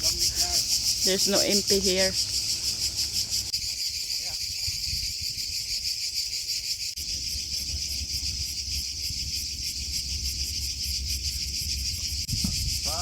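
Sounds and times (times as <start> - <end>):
insects chorus pulsing: 0.0 - 13.0.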